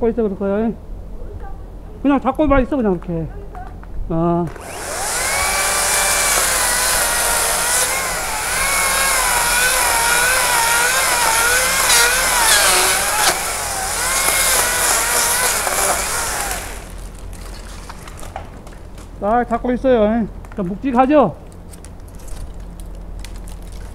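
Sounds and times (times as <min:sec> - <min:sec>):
chainsaw cutting wood: 0:04.5 - 0:17.4.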